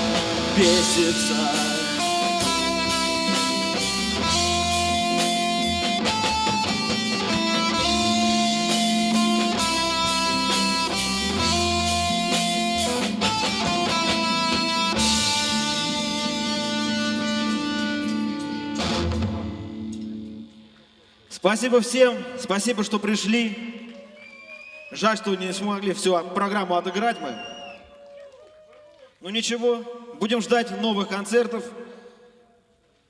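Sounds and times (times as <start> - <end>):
guitar chord ringing: 0.0 - 20.5
rock band playing guitars: 0.0 - 20.5.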